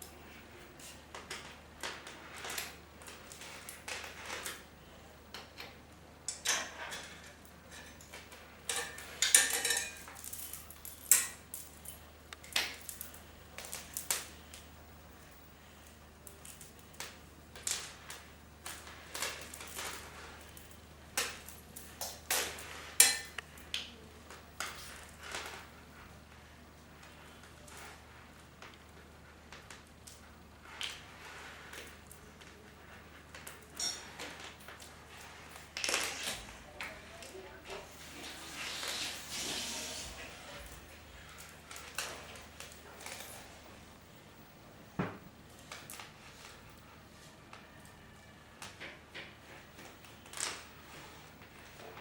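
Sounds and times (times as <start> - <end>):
tools clinking on bicycle parts: 5.3 - 25.7, 29.6 - 39.4.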